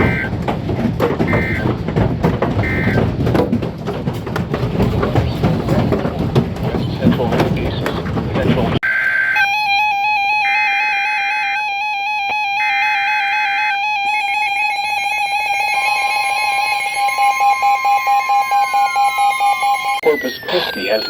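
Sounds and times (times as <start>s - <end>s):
digital data tone bursts: 0.0s - 0.3s, 1.3s - 1.7s, 2.6s - 3.0s, 8.8s - 21.0s
fast-pulsing electronic alert tone: 0.0s - 0.3s, 1.3s - 1.7s, 2.6s - 3.0s, 8.8s - 21.0s
higher electronic tone: 0.0s - 0.3s, 1.3s - 1.7s, 2.6s - 3.0s, 8.8s - 21.0s
steady electronic tone: 0.0s - 0.3s, 1.3s - 1.7s, 2.6s - 3.0s, 8.8s - 21.0s.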